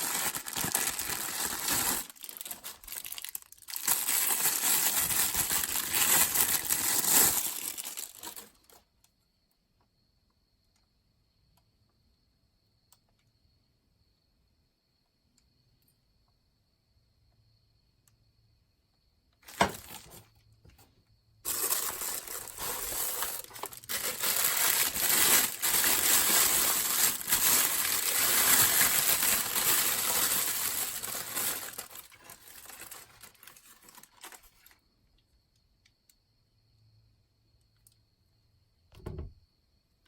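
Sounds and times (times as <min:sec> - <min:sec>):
packaging crinkling: 0:00.0 - 0:08.8, 0:19.4 - 0:20.3, 0:21.4 - 0:34.8.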